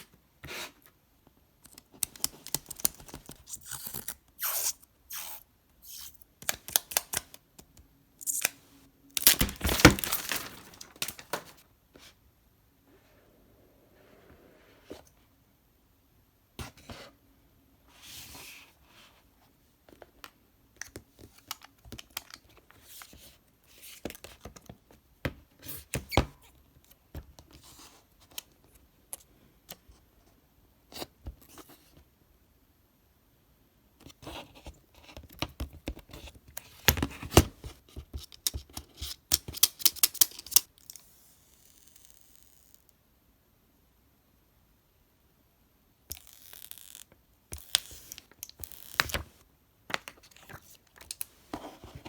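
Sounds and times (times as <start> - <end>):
wrapping tearing: 9.2 - 11.6
paper and plastic rustling: 9.2 - 11.7.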